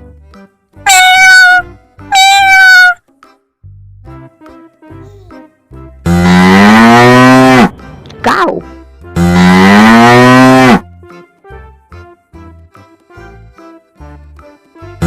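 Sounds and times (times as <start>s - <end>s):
soft children's music: 0.0s - 6.1s, 7.2s - 9.2s, 10.8s - 15.0s
cow mooing: 6.1s - 7.7s, 9.2s - 10.8s.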